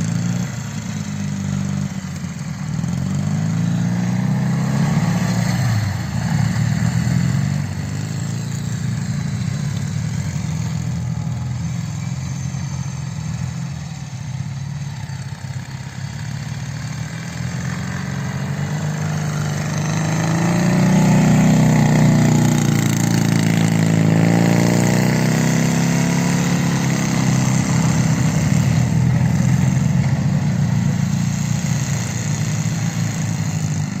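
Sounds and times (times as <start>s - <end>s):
motorcycle engine running: 0.0s - 34.0s.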